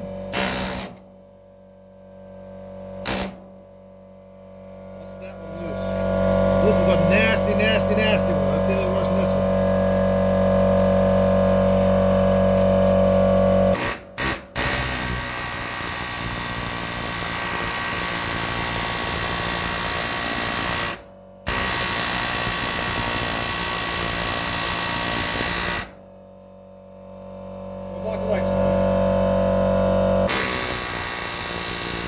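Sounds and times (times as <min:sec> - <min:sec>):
loud rattling power tool: 0:00.0 - 0:01.1, 0:03.0 - 0:03.5, 0:04.7 - 0:26.0, 0:28.1 - 0:32.0
steady hum: 0:01.3 - 0:13.7.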